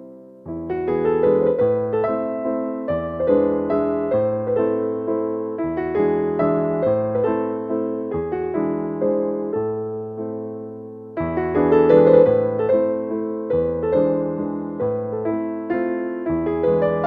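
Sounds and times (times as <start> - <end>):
slow calm piano music: 0.0 - 17.0.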